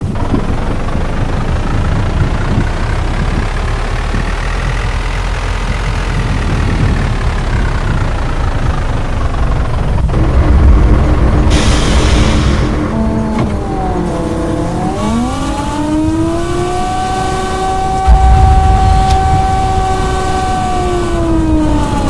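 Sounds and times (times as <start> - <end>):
heavy wind rumble on microphone: 0.0 - 22.0
whining tone rising and falling: 10.0 - 22.0.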